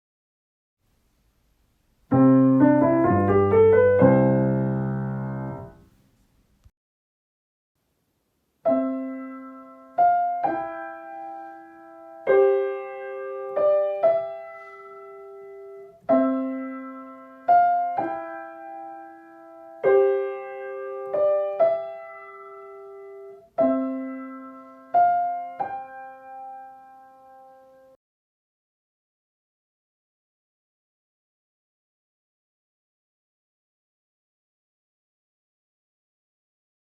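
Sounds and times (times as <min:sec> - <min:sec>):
piano chords ringing: 0:02.1 - 0:05.8, 0:08.6 - 0:28.0.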